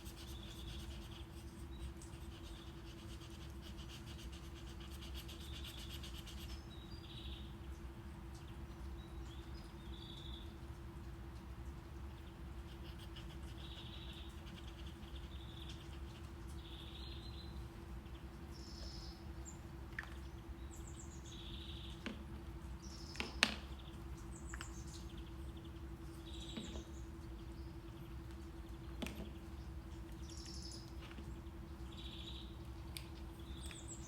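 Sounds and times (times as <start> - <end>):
faint hum: 0.0 - 34.0
low brown noise: 0.0 - 34.0
birds chirping: 11.7 - 34.0.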